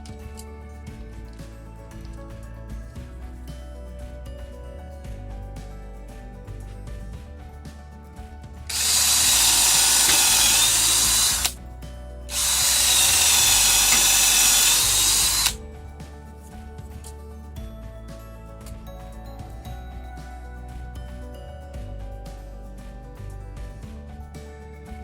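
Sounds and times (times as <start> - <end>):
cordless drill whining: 8.7 - 11.6, 12.3 - 15.6.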